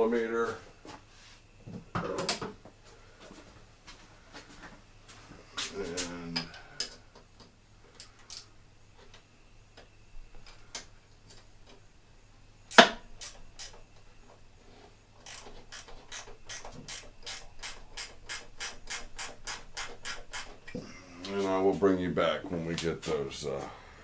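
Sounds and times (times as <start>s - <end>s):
socket ratchet clicking: 13.2s - 13.8s, 15.2s - 20.6s.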